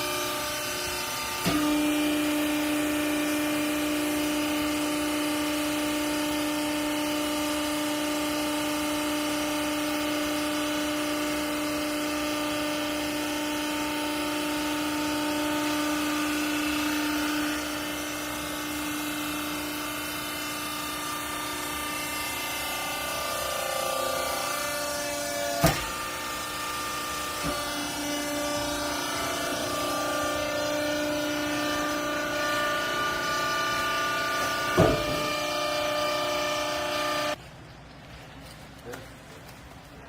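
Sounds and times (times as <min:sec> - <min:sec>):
hydraulic machinery humming: 0:00.0 - 0:37.4
strong machine tone: 0:12.1 - 0:37.4.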